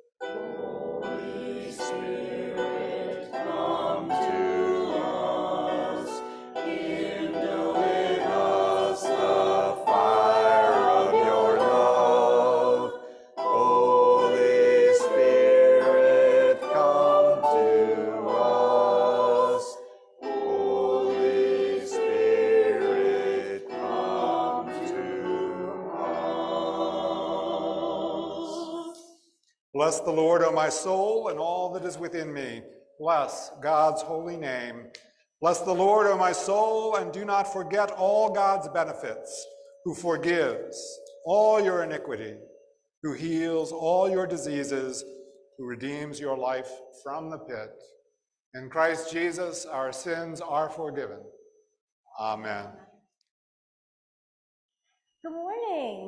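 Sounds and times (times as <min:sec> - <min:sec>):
group singing a hymn: 0:00.2 - 0:34.6, 0:35.4 - 0:39.1.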